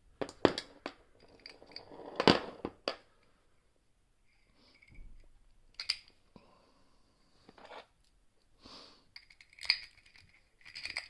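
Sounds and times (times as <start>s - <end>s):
padlock metallic clicks and rattles: 9.2s - 11.0s.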